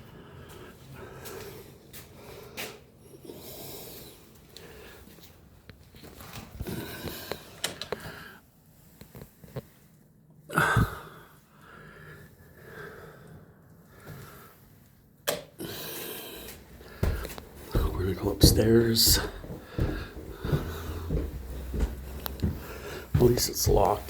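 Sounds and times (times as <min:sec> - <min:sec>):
person breathing close to microphone: 0:10.5 - 0:14.8, 0:15.6 - 0:24.0.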